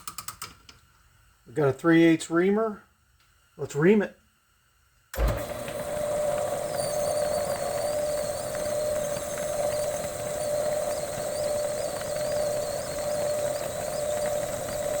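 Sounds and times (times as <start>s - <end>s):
metal lathe whining: 5.2s - 15.0s.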